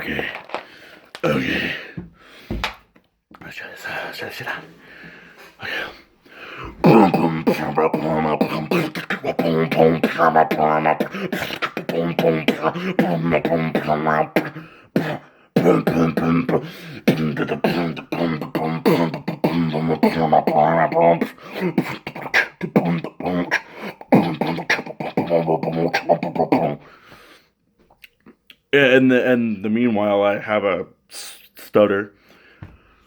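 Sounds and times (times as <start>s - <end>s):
man beatboxing: 6.8s - 26.8s.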